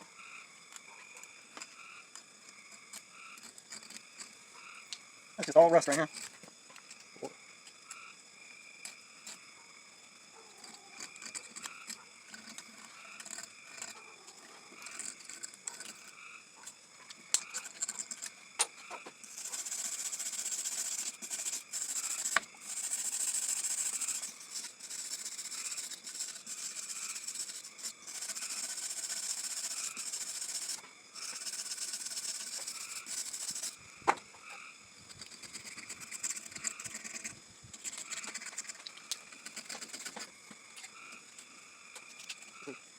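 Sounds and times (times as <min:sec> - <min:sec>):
blade scraping metal: 0:17.3 - 0:18.4, 0:19.2 - 0:33.8, 0:35.1 - 0:40.3.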